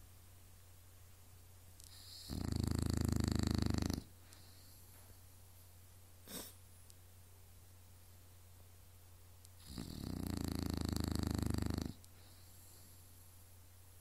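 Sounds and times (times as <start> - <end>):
pet snoring: 1.8 - 4.6, 9.6 - 12.8
pet snuffling: 9.6 - 12.8.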